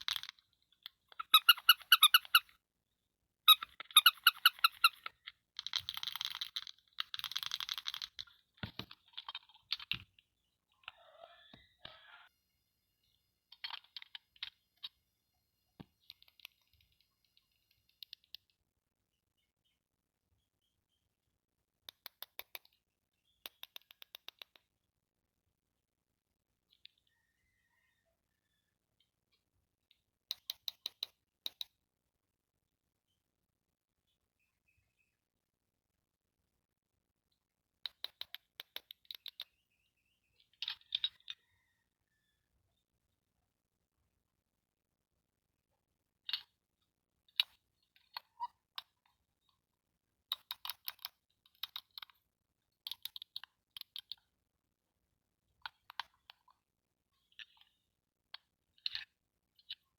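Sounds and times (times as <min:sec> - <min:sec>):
toy pieces clicking and tapping: 0:00.0 - 0:02.5, 0:03.5 - 0:10.3, 0:13.5 - 0:15.0, 0:15.8 - 0:18.6, 0:21.9 - 0:22.8, 0:23.4 - 0:24.7, 0:30.3 - 0:31.7, 0:37.8 - 0:39.6, 0:40.4 - 0:41.4, 0:47.3 - 0:49.7, 0:50.3 - 0:54.3, 0:55.6 - 0:59.9.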